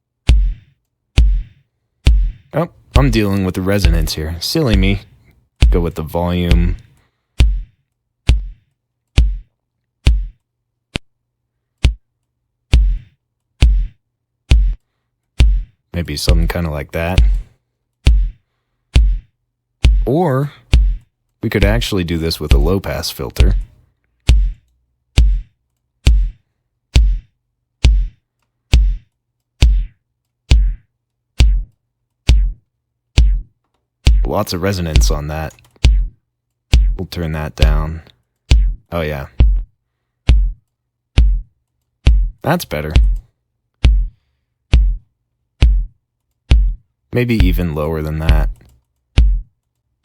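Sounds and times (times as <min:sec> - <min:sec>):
electronic kick drum beat: 0:00.3 - 0:05.0, 0:05.6 - 0:06.8, 0:07.4 - 0:07.7, 0:08.3 - 0:08.6, 0:09.2 - 0:10.4, 0:11.8 - 0:12.1, 0:12.7 - 0:14.8, 0:15.4 - 0:18.4, 0:19.0 - 0:20.1, 0:20.7 - 0:21.0, 0:21.6 - 0:21.9, 0:22.5 - 0:22.8, 0:23.4 - 0:23.7, 0:24.3 - 0:24.6, 0:25.2 - 0:32.6, 0:33.2 - 0:37.0, 0:37.6 - 0:39.7, 0:40.3 - 0:40.6, 0:41.2 - 0:46.8, 0:47.4 - 0:48.6, 0:49.2 - 0:49.5.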